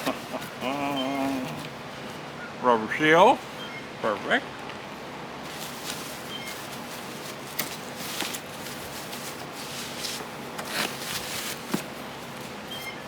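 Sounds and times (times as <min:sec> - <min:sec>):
packaging rustling and crinkling: 0:05.5 - 0:12.7.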